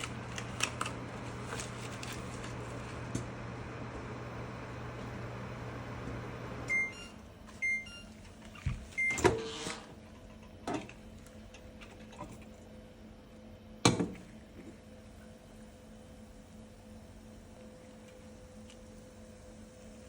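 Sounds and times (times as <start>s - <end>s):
microwave oven humming: 0.0s - 20.0s
microwave beeps: 6.3s - 8.2s, 8.9s - 9.7s.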